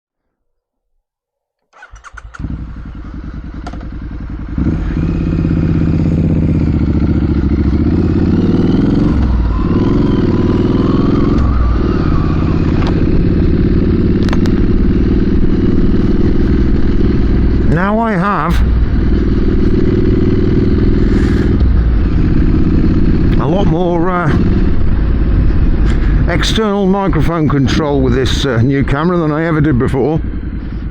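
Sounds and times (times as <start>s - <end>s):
motorcycle starter cranking: 1.7s - 4.0s
motorcycle engine running: 1.8s - 30.9s.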